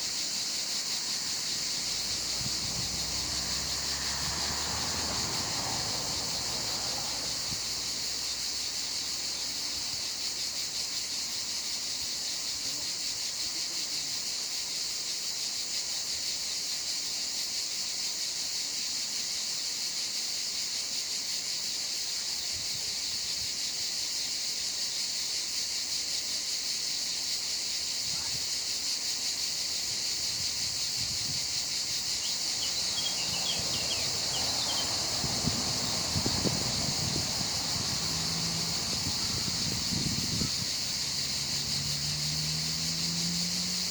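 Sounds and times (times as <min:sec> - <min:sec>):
insect chorus drone: 0:00.0 - 0:43.9
faint chirps: 0:32.0 - 0:43.3.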